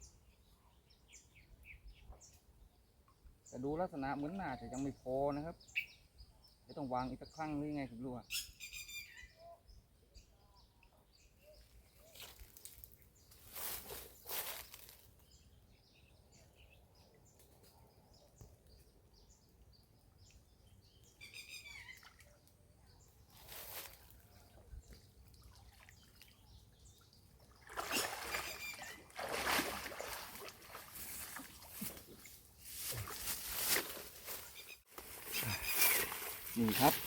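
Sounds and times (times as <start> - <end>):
faint bird chirps: 8.1 - 19.4, 20.2 - 29.1
water splashing and dripping: 23.4 - 32.4.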